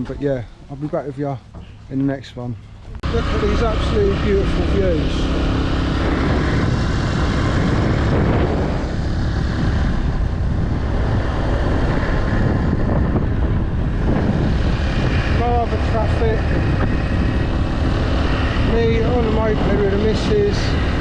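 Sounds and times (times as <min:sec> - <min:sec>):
wind buffeting microphone: 0:00.0 - 0:21.0
moped engine running: 0:02.8 - 0:11.9.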